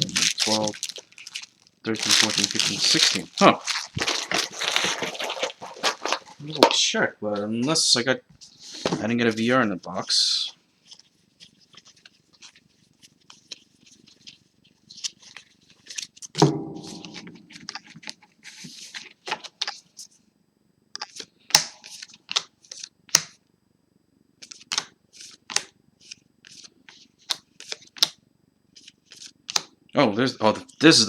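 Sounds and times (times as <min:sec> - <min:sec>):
cards clicking and rustling: 0:00.0 - 0:06.8, 0:24.4 - 0:28.2
low pitched thud: 0:16.4 - 0:17.6.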